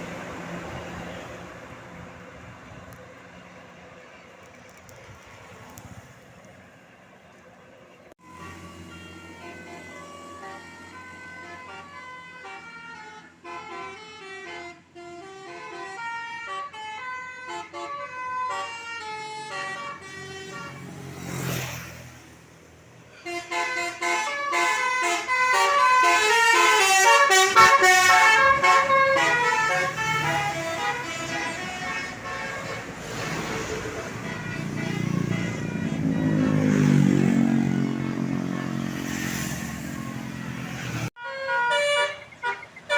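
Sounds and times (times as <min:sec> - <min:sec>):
bus horn melody: 0:08.2 - 0:21.4, 0:23.1 - 0:42.9.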